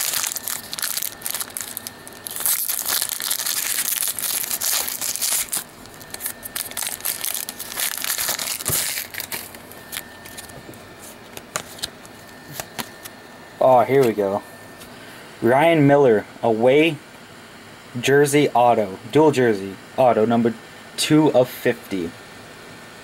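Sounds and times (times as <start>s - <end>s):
wrapper tearing and crinkling: 0.0s - 10.5s
cards being handled: 0.0s - 13.1s, 14.0s - 14.2s.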